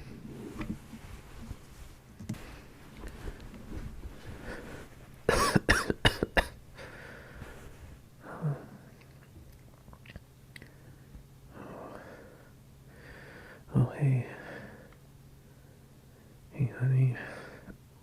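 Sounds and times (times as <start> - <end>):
man coughing: 5.3 - 6.6.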